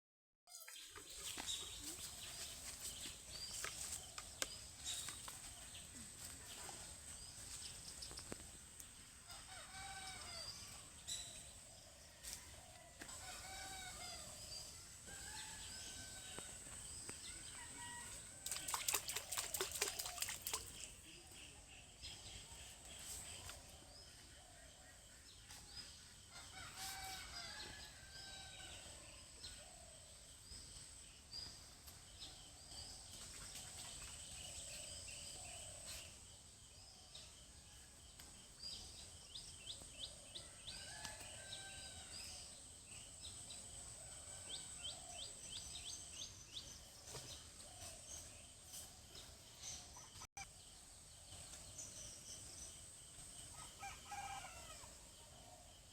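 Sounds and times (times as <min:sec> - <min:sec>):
small birds chirping: 0:17.1 - 0:21.7.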